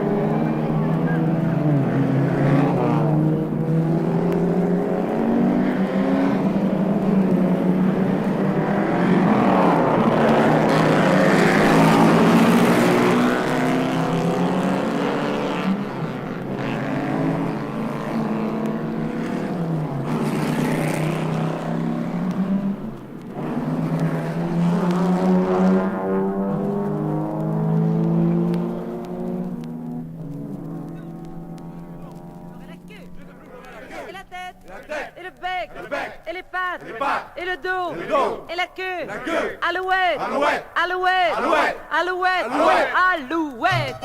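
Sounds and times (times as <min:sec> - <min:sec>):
vehicle engine revving: 0:00.0 - 0:34.2.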